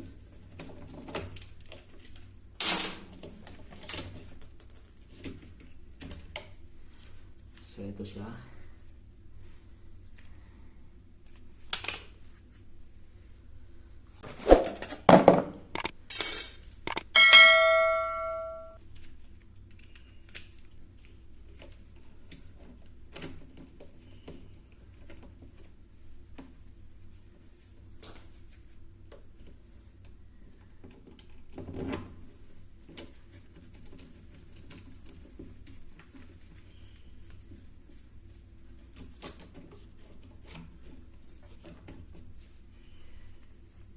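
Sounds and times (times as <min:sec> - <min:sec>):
tools clattering: 0:15.8 - 0:18.8
metal piece ringing: 0:16.9 - 0:18.8.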